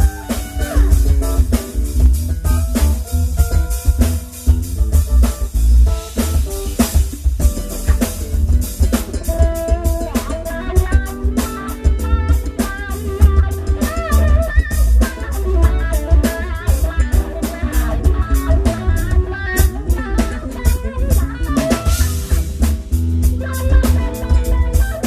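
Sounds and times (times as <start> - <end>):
drum kit: 0.0 - 25.0
electric guitar lead: 0.0 - 25.0
heavy bass: 0.0 - 25.0.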